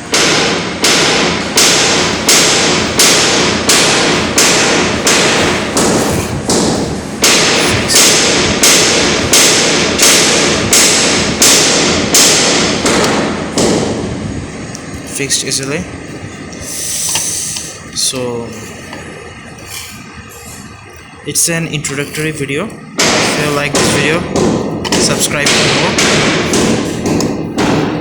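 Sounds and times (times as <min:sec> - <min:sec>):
loud sharp hits: 0:00.0 - 0:16.2, 0:22.8 - 0:28.0.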